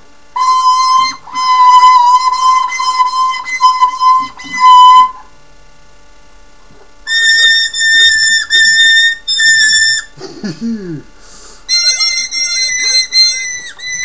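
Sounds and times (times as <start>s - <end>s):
guitar string squealing: 0.4s - 5.3s, 7.1s - 10.2s, 11.7s - 14.0s.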